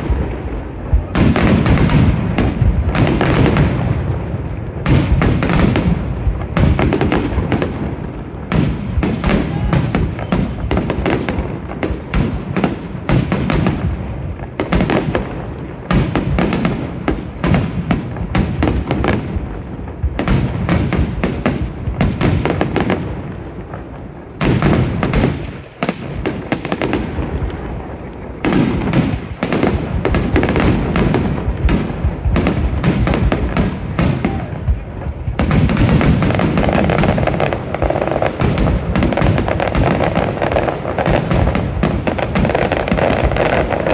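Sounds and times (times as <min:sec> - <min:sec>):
fireworks bangs and crackles: 0:00.0 - 0:43.9.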